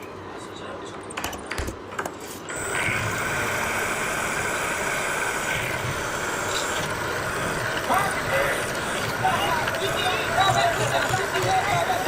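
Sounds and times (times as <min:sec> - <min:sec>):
electric grinder whining: 0:02.5 - 0:12.0.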